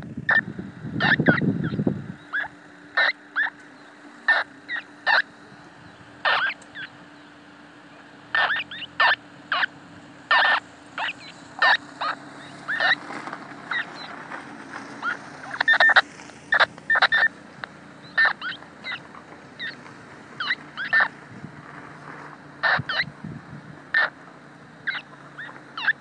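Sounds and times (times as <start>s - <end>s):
faint steady hum: 0.0s - 26.0s
radio chirps and warbling bursts: 0.2s - 13.1s, 15.0s - 17.4s, 18.0s - 19.8s, 20.4s - 21.2s, 22.6s - 23.1s.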